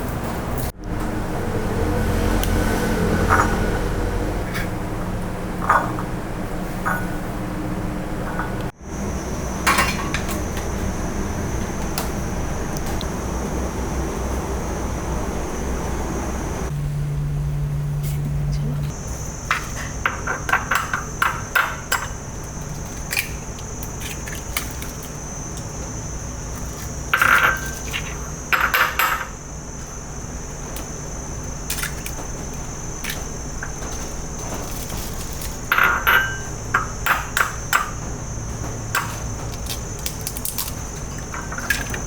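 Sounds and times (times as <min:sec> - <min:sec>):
low hum: 0:00.0 - 0:19.4
steady high whine: 0:00.0 - 0:39.4
kitchen utensils clinking: 0:03.0 - 0:04.8, 0:05.5 - 0:07.4, 0:08.2 - 0:08.7, 0:09.5 - 0:13.0, 0:18.9 - 0:29.8, 0:30.5 - 0:42.0
kitchen utensils knocking: 0:03.2 - 0:03.9, 0:05.6 - 0:06.2, 0:09.6 - 0:10.7, 0:19.5 - 0:22.3, 0:27.1 - 0:29.4, 0:33.1 - 0:39.5.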